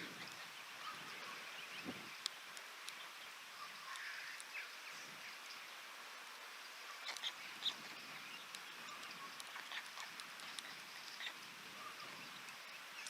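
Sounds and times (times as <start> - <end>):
rain hiss: 0.0 - 13.0
faint bird calls: 2.9 - 5.8, 6.8 - 13.0.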